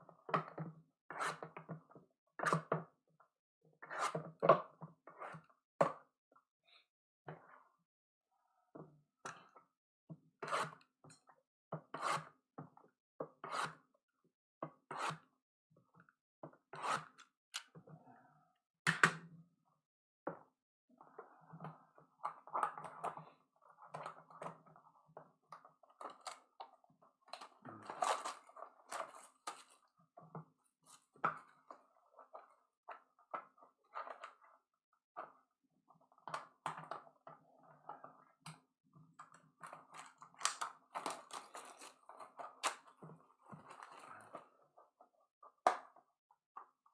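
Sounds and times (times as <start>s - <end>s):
packaging rustling and crinkling: 39.9s - 43.0s.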